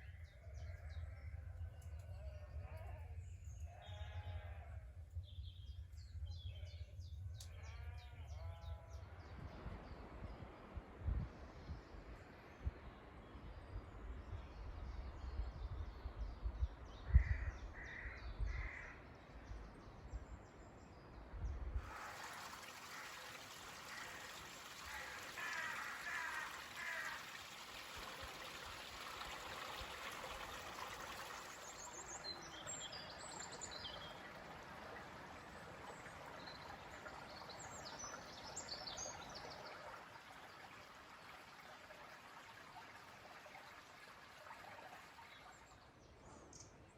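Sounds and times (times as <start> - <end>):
bird calls and birdsong: 29.7 - 39.9.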